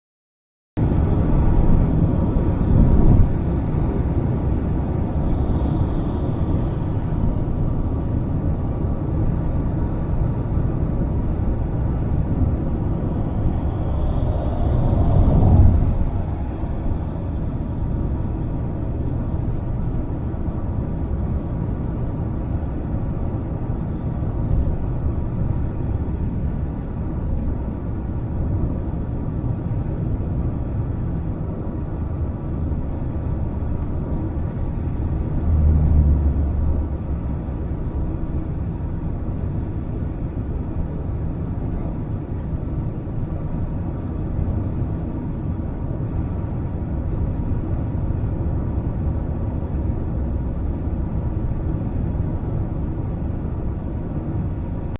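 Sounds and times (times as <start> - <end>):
wind buffeting microphone: 0.8 - 54.9.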